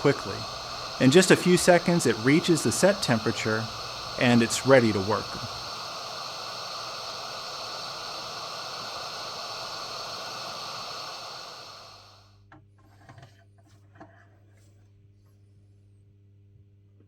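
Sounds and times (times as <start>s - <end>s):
hot air gun hissing: 0.0s - 12.3s.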